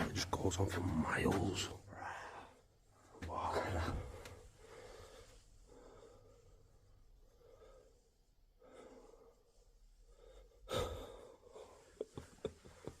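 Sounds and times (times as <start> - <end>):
person breathing: 1.9 - 2.8, 3.7 - 13.0.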